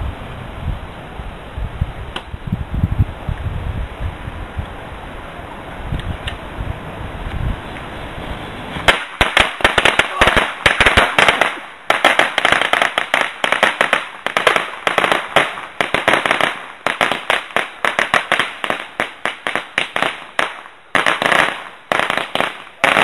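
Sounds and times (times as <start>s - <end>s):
rapid sharp pops and bangs: 8.8s - 23.0s.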